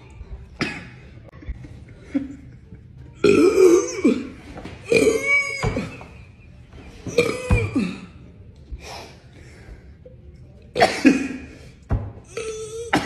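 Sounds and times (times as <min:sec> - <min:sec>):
woman coughing and burping: 0:00.6 - 0:01.0, 0:03.2 - 0:05.9, 0:07.1 - 0:08.2, 0:10.7 - 0:11.5, 0:12.3 - 0:13.0.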